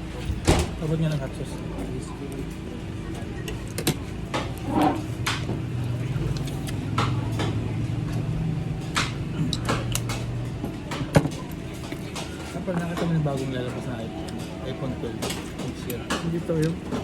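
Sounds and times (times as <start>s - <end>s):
low engine hum: 0.0s - 17.0s.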